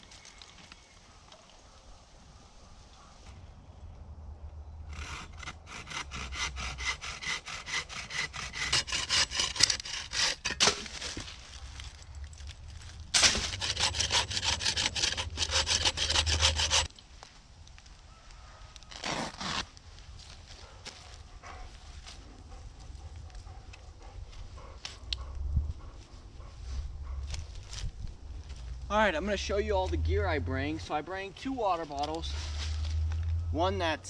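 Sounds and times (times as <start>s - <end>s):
saw cutting through wood: 4.9s - 11.2s, 13.2s - 16.9s.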